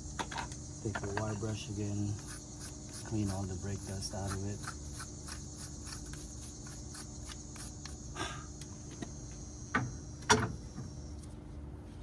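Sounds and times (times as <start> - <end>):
wire brush scrubbing metal: 1.4 - 8.0.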